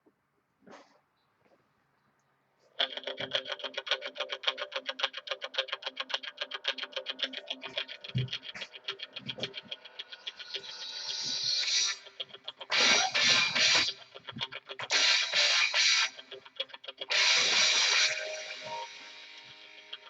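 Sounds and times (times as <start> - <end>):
music with fast pulsing beat: 6.6 - 20.0.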